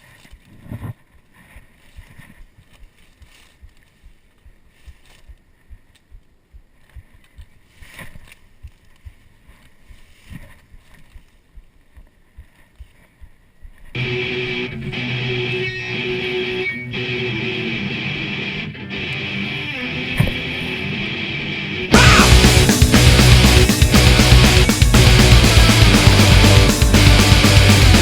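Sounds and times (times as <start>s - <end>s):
electric guitar rock music: 14.0s - 28.0s.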